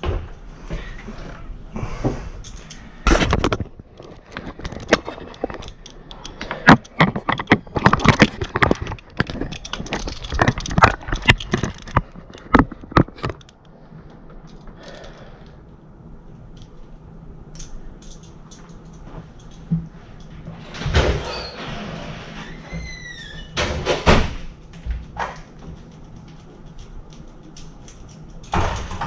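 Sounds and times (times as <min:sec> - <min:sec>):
handling clicks knocks and scrapes: 0:02.4 - 0:15.2, 0:24.8 - 0:29.0.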